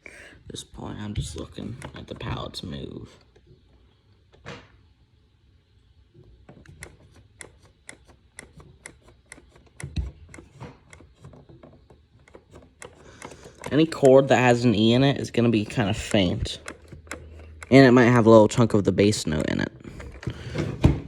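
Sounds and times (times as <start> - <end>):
accordion buttons clicking: 6.6 - 14.9, 15.6 - 17.9.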